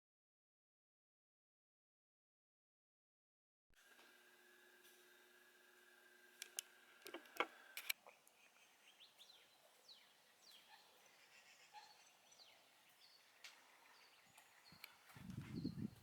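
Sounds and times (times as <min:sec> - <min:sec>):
faint birds chirping: 0:03.8 - 0:16.0
sharp clicks: 0:03.9 - 0:08.4, 0:12.4 - 0:15.4.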